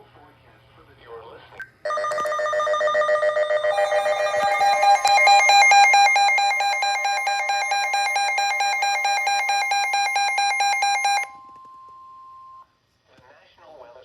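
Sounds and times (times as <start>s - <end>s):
electronic alert warble: 3.7s - 11.3s.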